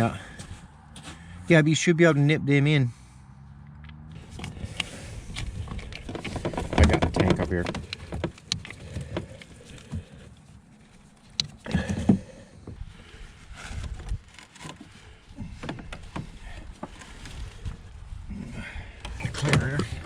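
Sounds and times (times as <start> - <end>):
knocks and clunks of parts: 3.7 - 10.5, 11.1 - 13.0.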